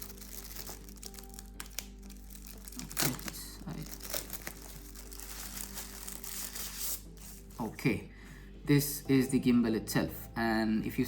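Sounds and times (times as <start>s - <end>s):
packaging crinkling and rustling: 0.0s - 7.7s
quiet background music: 0.0s - 11.0s.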